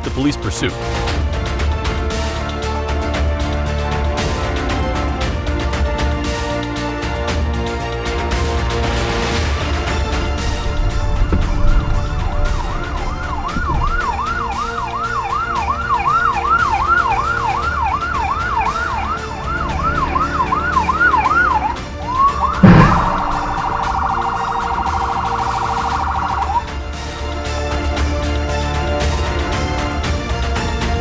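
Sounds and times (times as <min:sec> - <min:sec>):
loud horn blast: 0:09.4 - 0:27.3
police siren yelping and warbling: 0:11.3 - 0:27.0.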